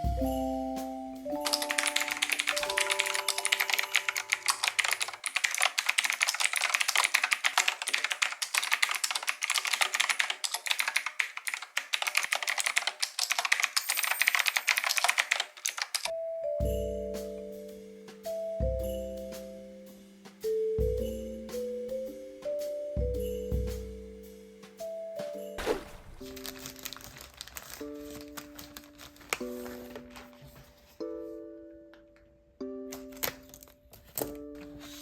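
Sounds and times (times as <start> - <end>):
soft mallet-toned background music: 0.0 - 4.9, 16.1 - 25.6, 28.0 - 33.6
typing on mechanical keyboard: 1.4 - 16.1, 26.1 - 30.5.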